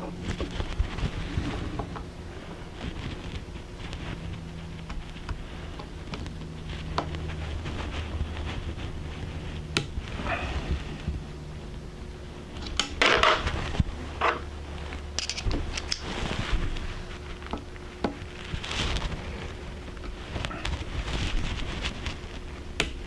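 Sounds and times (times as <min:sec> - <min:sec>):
steady low hum: 0:00.0 - 0:23.0
metal parts clattering: 0:15.2 - 0:16.0.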